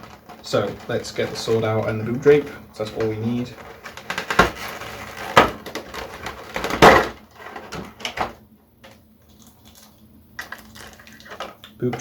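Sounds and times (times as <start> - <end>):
plastic packaging crinkling: 0.0 - 11.8.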